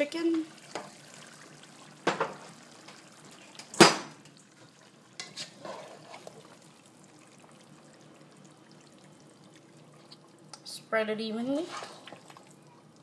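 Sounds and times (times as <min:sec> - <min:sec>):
spoon scraping: 0:05.2 - 0:06.5, 0:11.6 - 0:12.5.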